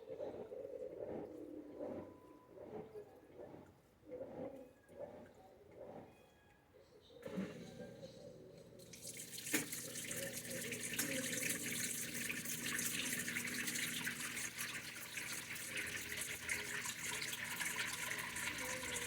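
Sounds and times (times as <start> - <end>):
water rushing into washing machine: 7.2 - 19.0.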